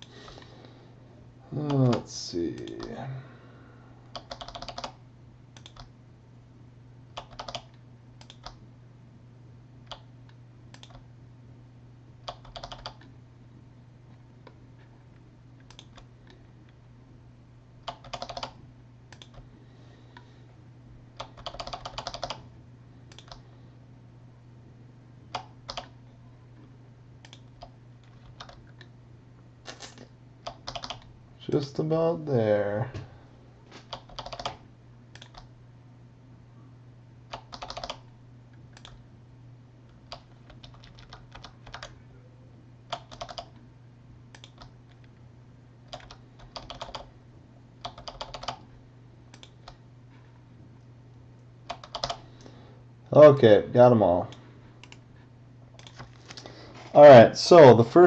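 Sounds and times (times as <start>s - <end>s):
steady low hum: 0.0s - 58.0s
typing on computer keyboard: 4.1s - 5.0s, 5.6s - 5.9s, 7.2s - 8.6s, 10.8s - 11.0s, 12.2s - 13.1s, 17.8s - 19.4s, 21.2s - 22.4s, 23.1s - 23.4s, 25.3s - 26.0s, 27.2s - 28.9s, 30.4s - 31.1s, 33.9s - 34.6s, 35.2s - 35.5s, 37.3s - 38.1s, 38.7s - 39.0s, 40.0s - 42.0s, 42.9s - 43.6s, 44.3s - 45.0s, 45.9s - 47.1s, 47.8s - 48.6s, 49.3s - 49.8s, 51.7s - 52.2s.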